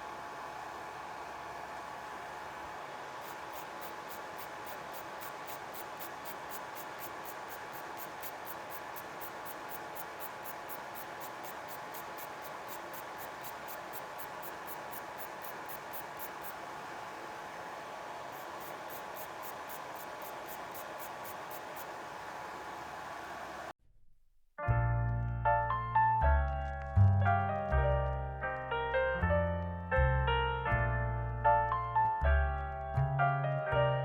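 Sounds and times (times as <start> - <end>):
small electric motor humming: 0.0 - 23.7
fast even scratching: 3.2 - 16.6, 18.3 - 22.0.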